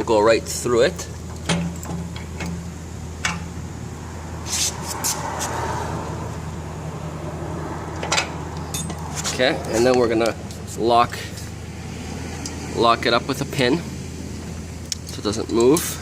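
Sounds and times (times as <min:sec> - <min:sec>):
metal clicks and knocks: 0:01.2 - 0:03.5, 0:08.0 - 0:10.6
scraping rustle: 0:09.0 - 0:10.0.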